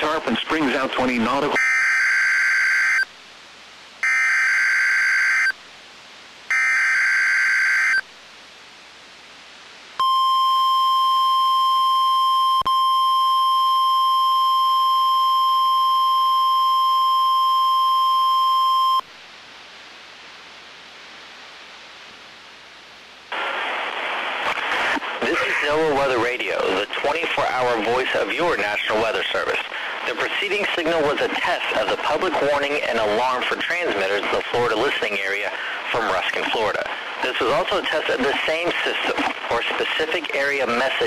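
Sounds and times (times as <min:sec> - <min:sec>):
faint radio hiss: 0:00.0 - 0:41.0
steady warning alarm tone: 0:01.6 - 0:03.1, 0:04.0 - 0:05.6, 0:06.5 - 0:08.0.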